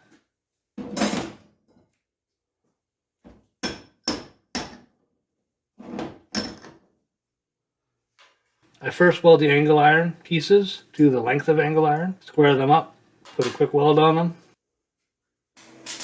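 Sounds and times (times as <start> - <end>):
steel pieces clanking: 15.6 - 16.0.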